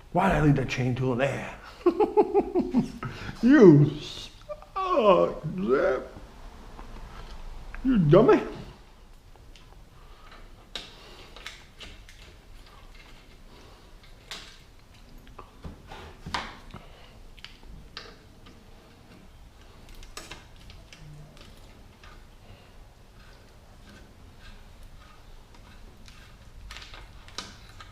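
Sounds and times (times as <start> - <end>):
tools and bike parts clicking: 17.4 - 22.2.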